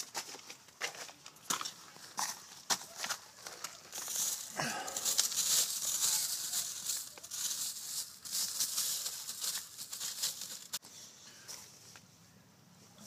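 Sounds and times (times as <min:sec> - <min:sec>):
footsteps crunching over debris: 0:00.0 - 0:10.8.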